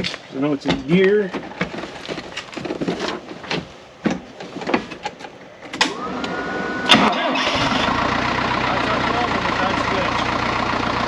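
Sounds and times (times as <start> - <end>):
starter motor whining: 5.8 - 11.0
tractor engine catching: 6.9 - 8.1.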